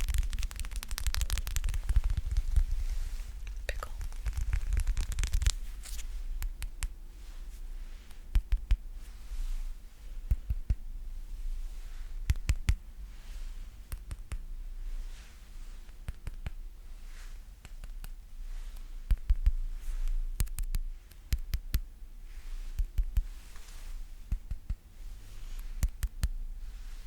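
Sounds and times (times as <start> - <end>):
sticky crackling peeling: 0.0 - 6.8
sticky clicks and taps: 12.2 - 12.8, 20.4 - 21.9.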